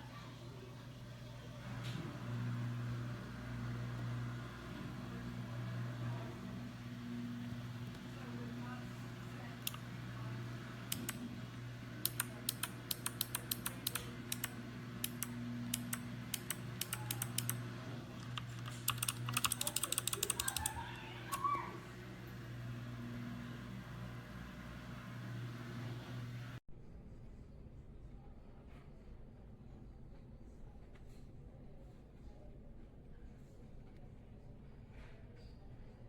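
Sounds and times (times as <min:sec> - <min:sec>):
steady low hum: 0:00.0 - 0:28.7
typing on mechanical keyboard: 0:12.1 - 0:17.6, 0:18.2 - 0:21.4.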